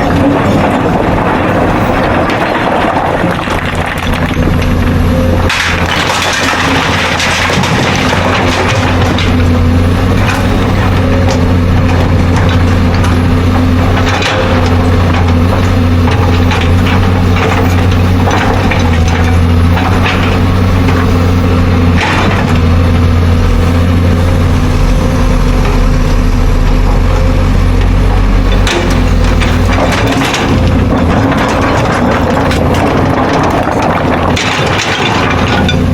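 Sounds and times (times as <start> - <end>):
excavator diesel engine running: 0.0 - 35.9
sharp knocks and crunching: 0.0 - 35.9.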